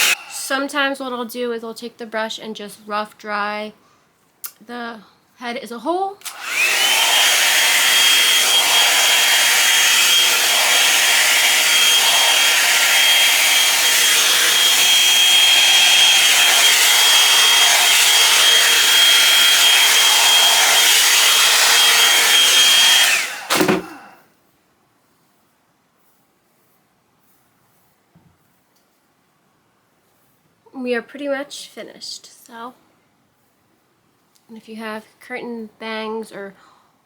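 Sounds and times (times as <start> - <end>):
blow-dryer brush whine and airflow: 0.0 - 1.0, 6.2 - 24.2.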